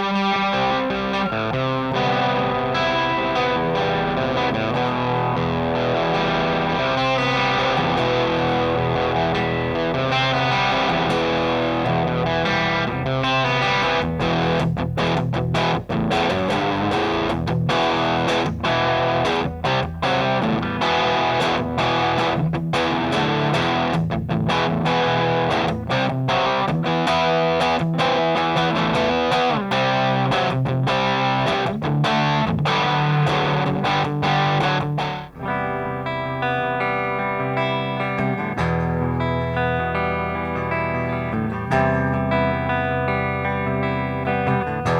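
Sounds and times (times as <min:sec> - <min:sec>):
distorted electric guitar chords: 0:00.0 - 0:44.9.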